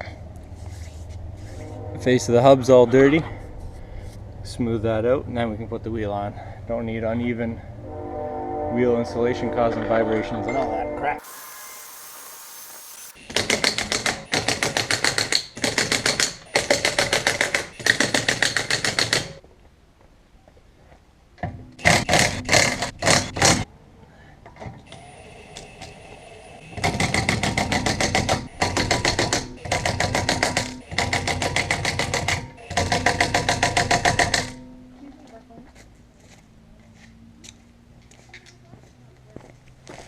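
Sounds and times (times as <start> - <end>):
impact wrench hammering: 26.8 - 34.7.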